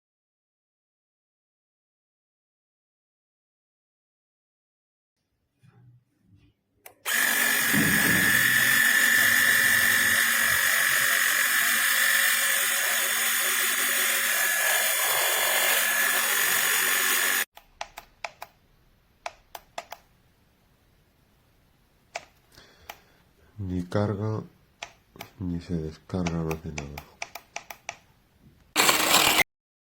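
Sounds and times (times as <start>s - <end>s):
air compressor whining: 7.0s - 17.5s
sharp clicks: 17.6s - 18.6s, 19.2s - 20.1s, 22.1s - 23.0s, 24.8s - 25.4s, 26.2s - 28.1s.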